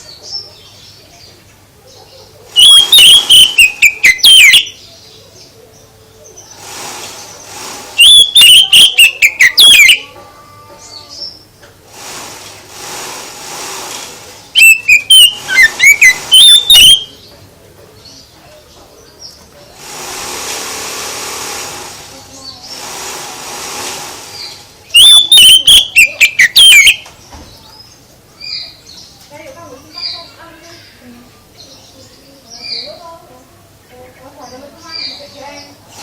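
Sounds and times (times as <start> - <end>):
songbird whistling: 2.6 - 4.8, 8.0 - 10.2, 14.6 - 17.3, 24.9 - 27.1
soft hissing: 6.4 - 8.0, 11.8 - 14.6.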